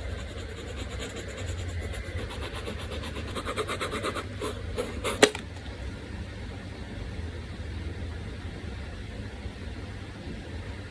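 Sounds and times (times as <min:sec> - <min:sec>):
pencil scratching on paper: 0:00.0 - 0:05.4.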